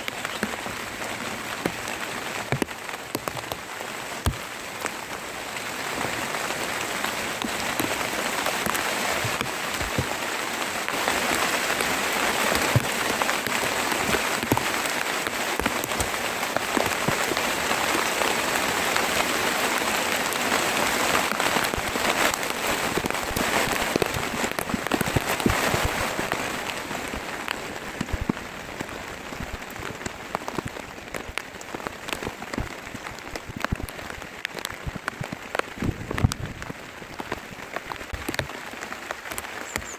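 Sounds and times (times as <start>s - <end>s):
heavy rain falling: 0.0s - 39.9s
raindrops clicking close by: 0.0s - 39.9s.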